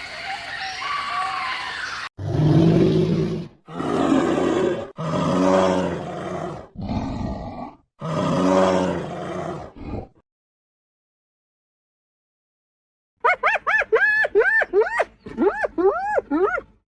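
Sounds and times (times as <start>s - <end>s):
large animal roaring: 2.2s - 10.2s.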